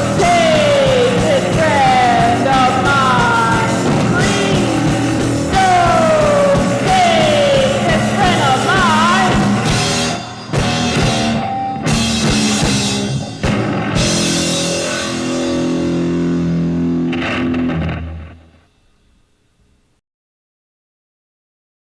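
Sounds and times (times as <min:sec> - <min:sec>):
rock band playing: 0:00.0 - 0:18.7.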